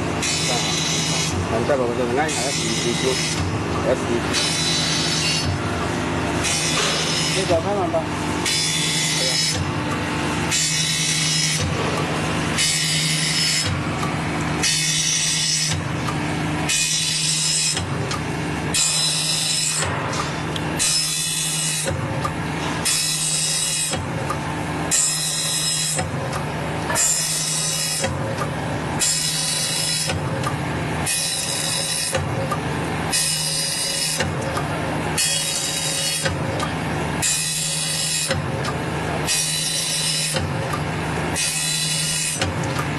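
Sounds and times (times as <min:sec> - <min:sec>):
steady motor hum: 0:00.0 - 0:42.9
grinding wheel rasping on saw teeth: 0:02.0 - 0:03.4, 0:04.4 - 0:05.4.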